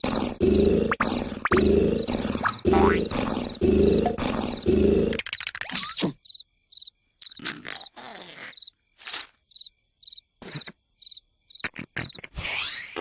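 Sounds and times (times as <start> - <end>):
cartoon cricket chirps: 0.1 - 13.0.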